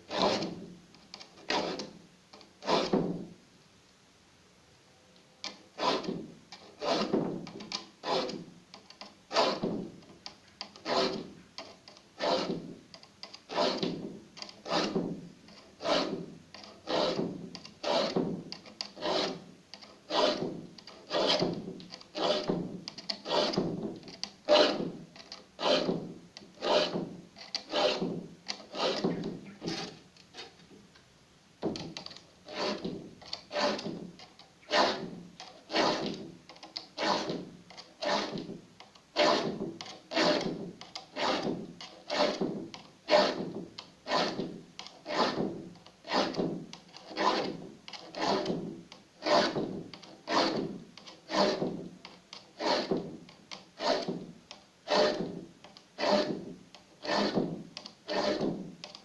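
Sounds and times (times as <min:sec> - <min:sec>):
file rasping on saw teeth: 0:00.1 - 0:00.6, 0:01.4 - 0:01.9, 0:02.6 - 0:03.0, 0:05.8 - 0:08.4, 0:09.3 - 0:09.8, 0:10.7 - 0:11.3, 0:12.2 - 0:12.6, 0:13.5 - 0:14.0, 0:14.6 - 0:15.0, 0:15.8 - 0:19.4, 0:20.1 - 0:26.0, 0:26.6 - 0:30.6, 0:32.0 - 0:34.0, 0:34.6 - 0:38.5, 0:39.2 - 0:42.5, 0:43.1 - 0:46.4, 0:47.0 - 0:48.6, 0:49.2 - 0:53.0, 0:53.8 - 0:54.2, 0:54.9 - 0:55.3, 0:56.0 - 0:57.5, 0:58.1 - 0:58.6.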